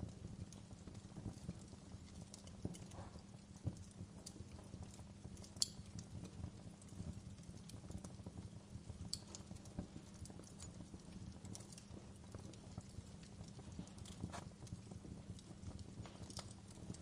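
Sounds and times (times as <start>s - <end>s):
sharp fire pops: 0.0s - 7.0s, 9.1s - 17.0s
fire crackling: 0.0s - 17.0s
fire rumbling: 0.0s - 17.0s.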